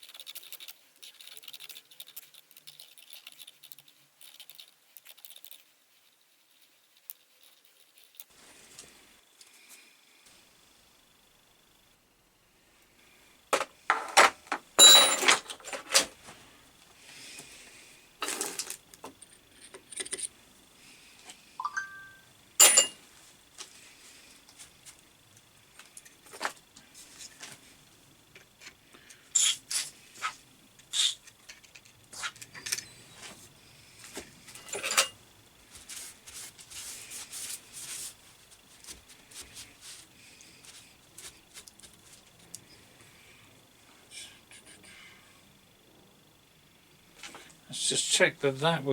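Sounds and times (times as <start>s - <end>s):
sharp ringing metal taps: 14.8s - 15.3s, 22.6s - 23.0s
hand tools clinking and knocking: 14.8s - 16.0s, 21.9s - 23.0s, 34.6s - 35.2s.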